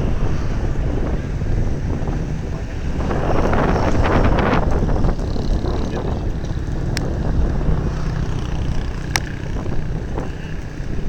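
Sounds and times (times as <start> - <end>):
boat engine rumbling: 0.0 - 11.0
sharp clicks: 4.6 - 10.8.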